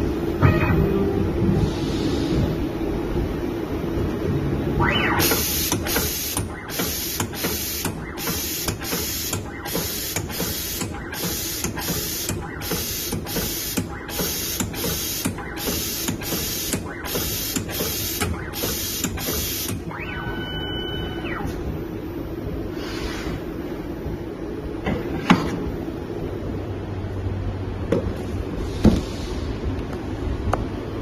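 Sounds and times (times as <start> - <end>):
low machine hum: 0.0 - 31.0
steady tone: 4.6 - 6.7, 19.8 - 22.7.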